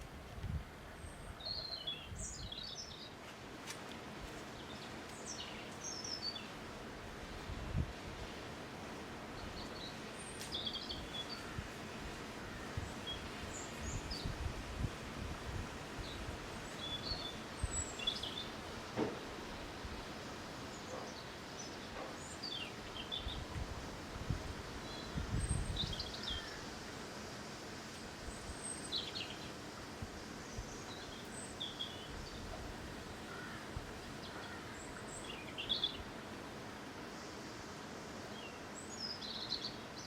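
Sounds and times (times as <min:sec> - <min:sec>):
wind blowing: 0:06.6 - 0:09.9, 0:10.7 - 0:18.8, 0:22.8 - 0:28.6.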